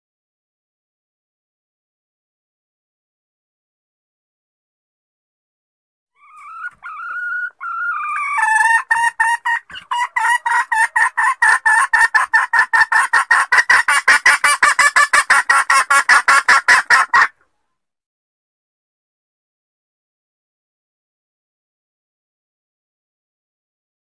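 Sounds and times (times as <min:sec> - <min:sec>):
hen whining call: 0:06.2 - 0:08.8
hen clucking rapidly: 0:06.2 - 0:17.4.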